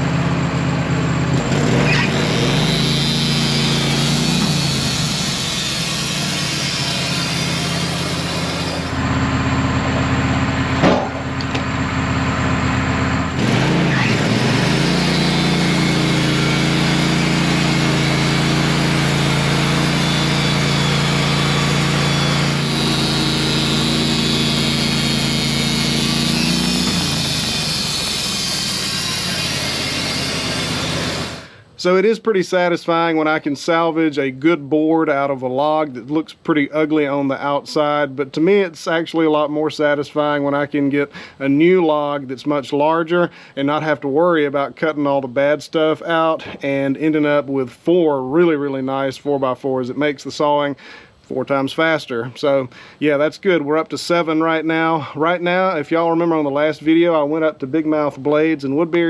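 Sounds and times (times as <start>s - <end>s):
sawmill engine running: 0.0s - 31.7s
band blade sawing wood: 1.4s - 9.0s, 13.3s - 31.6s.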